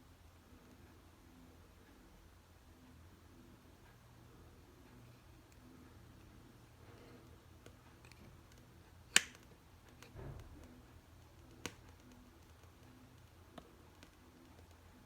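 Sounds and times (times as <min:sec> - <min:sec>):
sharp clicks of hard objects: 0:07.6 - 0:12.8.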